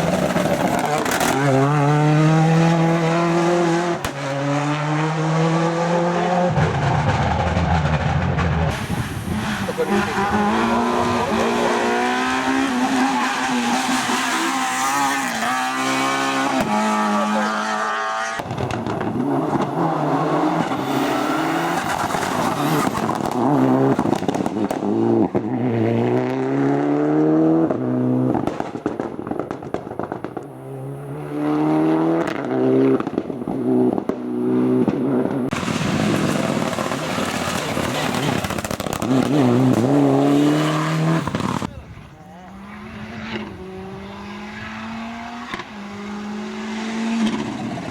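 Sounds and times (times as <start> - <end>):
race car engines revving: 0.0 - 47.9.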